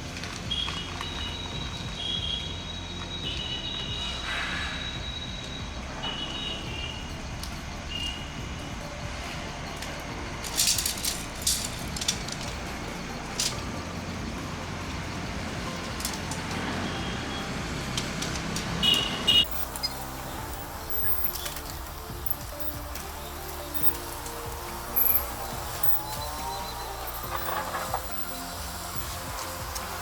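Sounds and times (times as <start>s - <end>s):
light rain hissing: 0.0s - 30.0s
sharp clicks and rustles: 8.9s - 30.0s.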